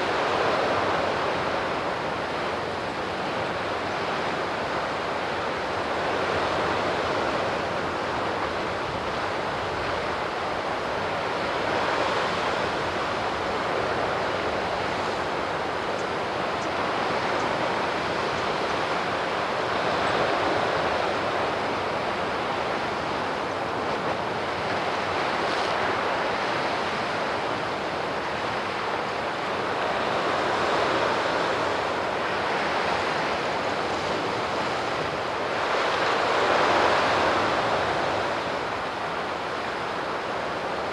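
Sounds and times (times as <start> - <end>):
waves washing on shore: 0.0 - 40.9.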